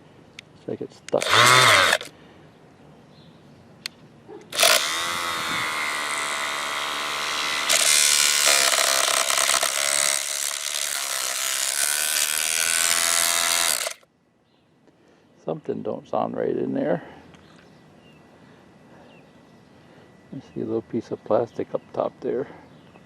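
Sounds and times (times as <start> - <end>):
orbital sander running: 1.2 - 2.1, 4.6 - 14.0.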